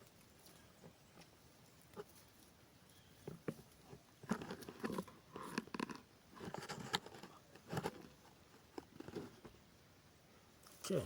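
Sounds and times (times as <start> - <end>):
crunching and rustling handling noises: 0.0 - 9.6.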